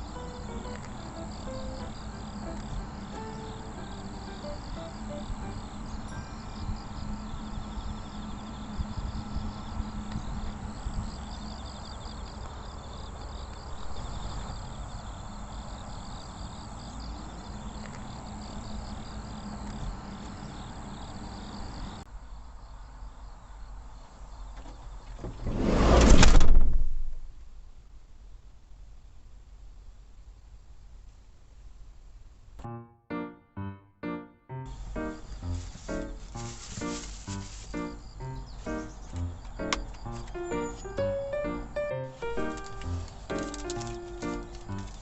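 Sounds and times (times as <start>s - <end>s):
insects chirping: 0.0s - 25.4s, 34.5s - 45.0s.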